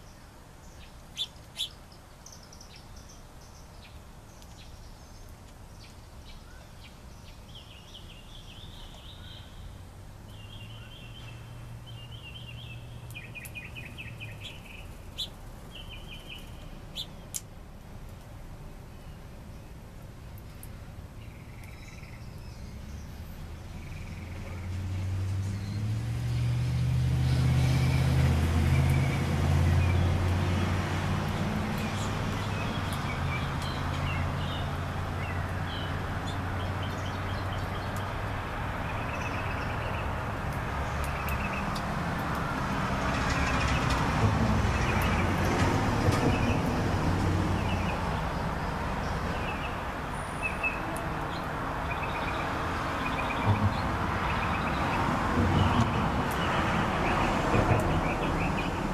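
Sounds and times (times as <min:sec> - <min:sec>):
small birds chirping: 0:00.0 - 0:44.0, 0:44.7 - 0:46.8, 0:47.6 - 0:58.9
traffic noise: 0:00.0 - 0:58.9
vehicle engine passing: 0:22.7 - 0:58.9.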